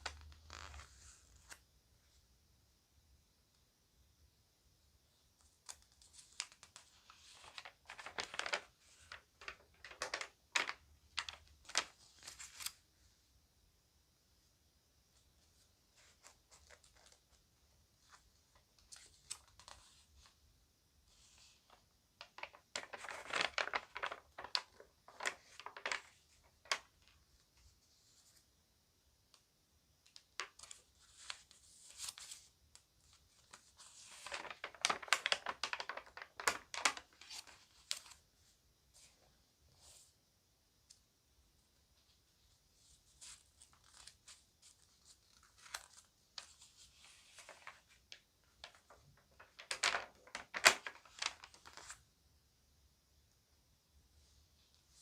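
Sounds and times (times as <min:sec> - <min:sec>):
magazine pages crinkling: 0:00.0 - 0:01.6, 0:05.5 - 0:12.8, 0:16.0 - 0:17.4, 0:18.0 - 0:20.4, 0:21.1 - 0:27.2, 0:30.1 - 0:38.2, 0:42.8 - 0:52.0.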